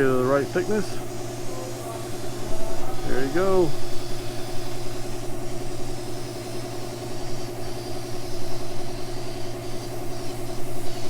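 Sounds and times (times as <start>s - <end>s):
air compressor droning: 0.0s - 11.0s.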